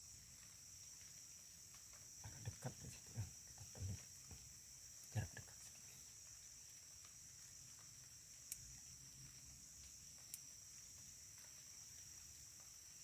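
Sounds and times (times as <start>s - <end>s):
faint sharp clicks: 9.8s - 10.5s.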